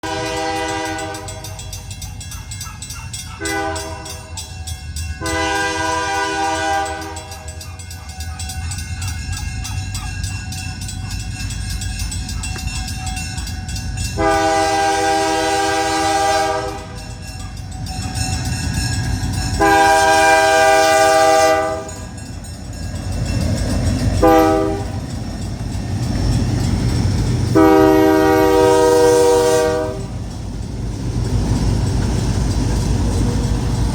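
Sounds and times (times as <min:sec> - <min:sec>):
locomotive air horn blasts: 0:00.0 - 0:01.7, 0:03.4 - 0:04.3, 0:05.2 - 0:07.5, 0:14.2 - 0:17.2, 0:19.6 - 0:22.1, 0:24.2 - 0:25.0, 0:27.5 - 0:30.1
locomotive engine rumble: 0:00.0 - 0:33.9.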